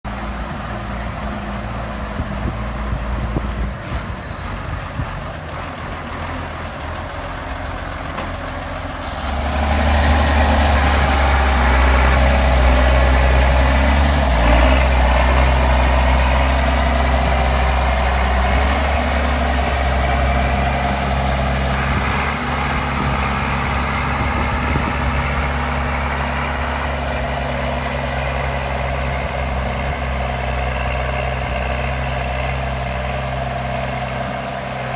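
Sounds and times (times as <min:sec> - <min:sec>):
tractor diesel engine revving: 0:00.1 - 0:34.9.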